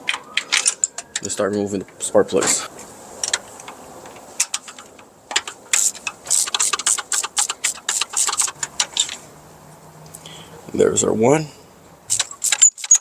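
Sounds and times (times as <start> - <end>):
ratchet wrench clicking: 3.2 - 9.2, 12.1 - 13.0.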